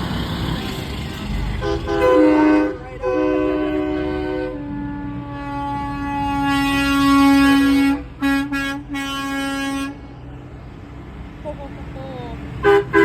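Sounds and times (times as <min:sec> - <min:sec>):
truck air horn blasts: 0:01.6 - 0:10.3, 0:12.5 - 0:13.0.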